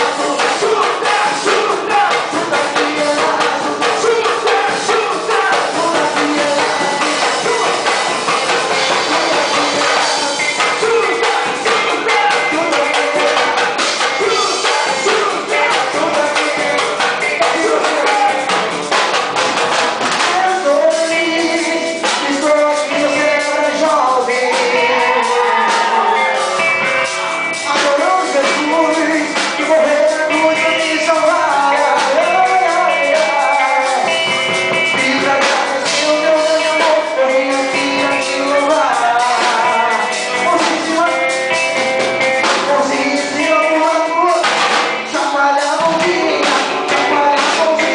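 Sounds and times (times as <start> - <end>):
person singing: 0.0 - 19.1, 20.1 - 47.9
drum hits: 0.0 - 23.4, 41.8 - 47.9
gospel band music: 0.0 - 47.9.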